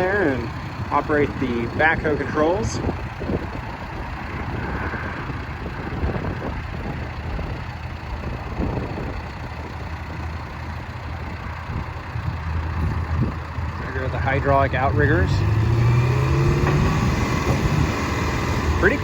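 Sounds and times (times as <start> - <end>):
diesel engine idling: 0.0 - 19.0.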